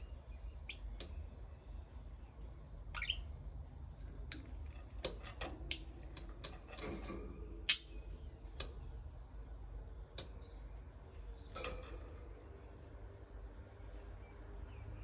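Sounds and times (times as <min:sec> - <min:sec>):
budgerigars chirping: 0:03.0 - 0:03.2.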